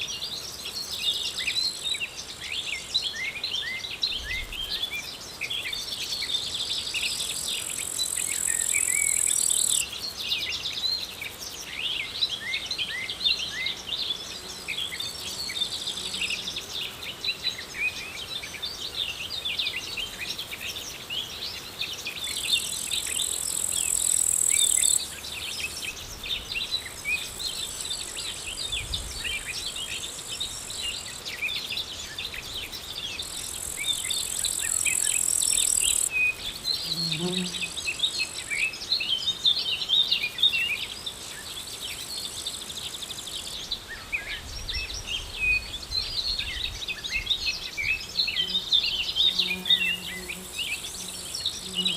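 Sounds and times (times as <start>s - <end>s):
small birds chirping and singing: 0.0s - 51.9s
insect high buzz: 4.0s - 39.4s, 46.5s - 51.9s.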